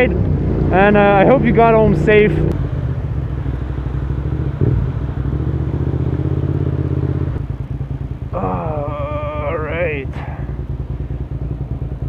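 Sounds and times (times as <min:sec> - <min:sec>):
motorcycle engine running: 0:00.0 - 0:12.0
person speaking: 0:08.4 - 0:10.3.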